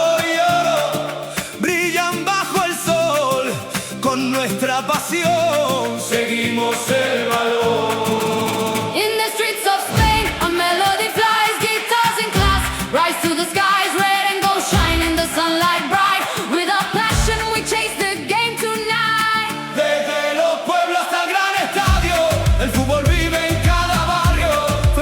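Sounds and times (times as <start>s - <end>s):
song with sung vocals: 0.0s - 25.0s
deep bass hits: 10.0s - 10.6s, 12.4s - 12.8s, 14.8s - 15.2s, 17.1s - 17.8s, 21.9s - 25.0s.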